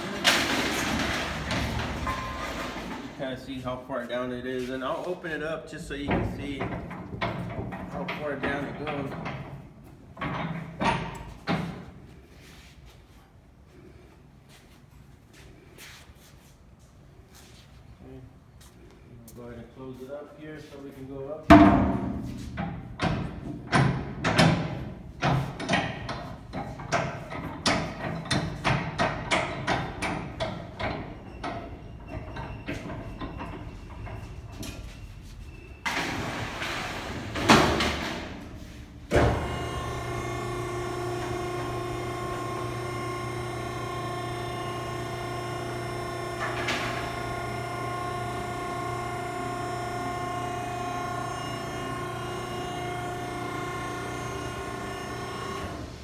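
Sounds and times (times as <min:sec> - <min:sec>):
metal clanks and knocks: 0:00.0 - 0:03.2, 0:06.0 - 0:11.9, 0:21.5 - 0:35.0
hydraulic pump motor humming: 0:35.9 - 0:56.0.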